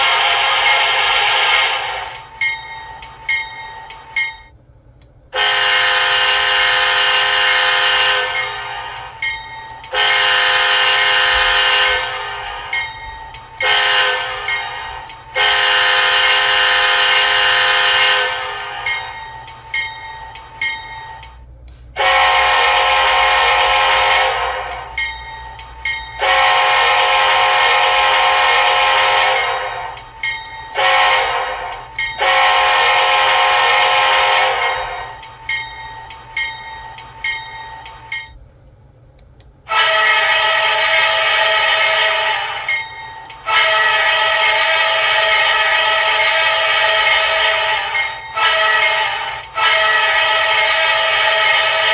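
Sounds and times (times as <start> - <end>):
locomotive air horn blasts: 0.0 - 2.1, 5.3 - 8.8, 9.9 - 12.6, 13.6 - 18.7, 22.0 - 24.9, 26.2 - 30.0, 30.7 - 35.1, 39.7 - 42.7, 43.4 - 51.9.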